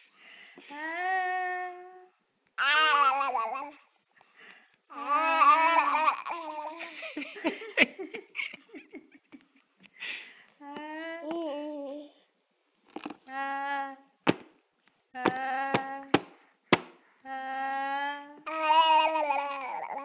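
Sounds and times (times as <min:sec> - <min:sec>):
baby humming aah: 0:02.6 - 0:03.9, 0:04.9 - 0:06.9, 0:18.5 - 0:20.0
sharp pats: 0:15.3 - 0:17.0.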